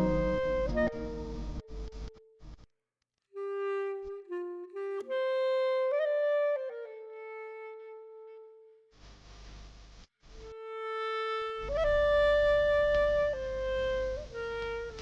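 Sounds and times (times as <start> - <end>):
slow melody of held notes: 0.0 - 2.1.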